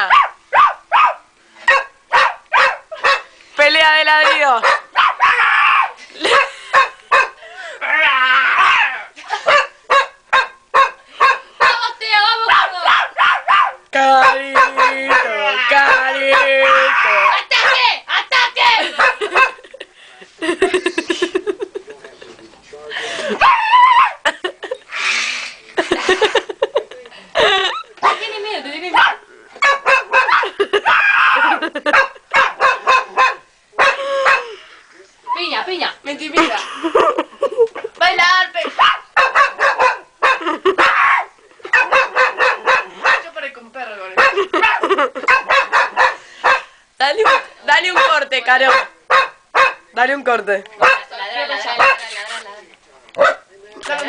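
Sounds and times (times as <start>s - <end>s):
dogs barking: 0.0s - 3.3s, 4.1s - 7.4s, 9.4s - 18.0s, 18.8s - 19.8s, 28.9s - 34.6s, 38.7s - 43.4s, 44.2s - 49.9s, 50.8s - 51.1s, 51.8s - 52.1s, 53.2s - 53.5s
dog whining yowls: 5.0s - 6.0s, 7.8s - 9.1s, 14.8s - 17.4s, 23.4s - 24.2s, 30.2s - 31.7s, 33.8s - 34.6s.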